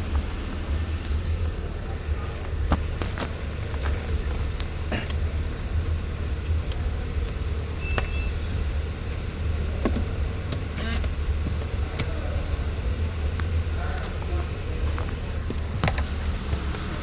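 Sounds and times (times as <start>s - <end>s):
car engine idling: 0.0s - 17.0s
two-tone electronic beep: 7.8s - 8.5s.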